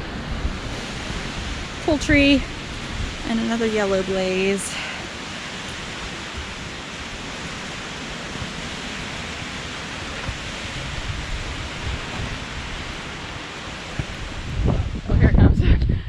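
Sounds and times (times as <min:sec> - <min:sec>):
storm wind and rain through trees: 0:00.0 - 0:16.0
wind buffeting microphone: 0:00.0 - 0:16.0.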